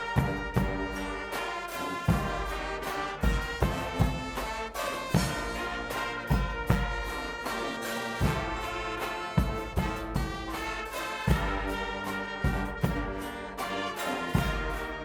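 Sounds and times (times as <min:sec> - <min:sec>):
brass band chords: 0:00.0 - 0:15.0
deep drum strikes: 0:02.1 - 0:13.3.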